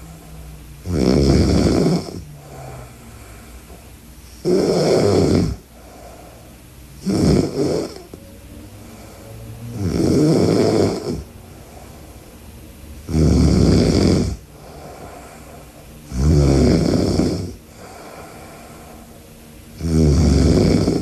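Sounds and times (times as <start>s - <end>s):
quiet breathing: 0.0s - 21.0s
woman snoring loudly: 0.8s - 3.4s, 4.3s - 6.1s, 7.0s - 8.2s, 8.8s - 11.8s, 13.0s - 19.2s, 19.8s - 21.0s.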